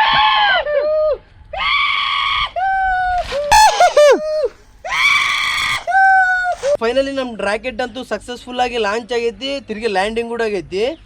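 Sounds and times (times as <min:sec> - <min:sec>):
men shouting and whooping: 0:02.8 - 0:06.1.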